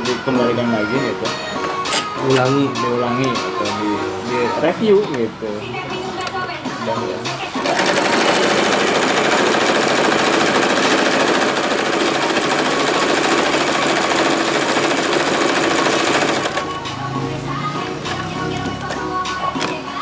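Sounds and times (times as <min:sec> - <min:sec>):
sewing machine stitching: 0:07.6 - 0:16.7.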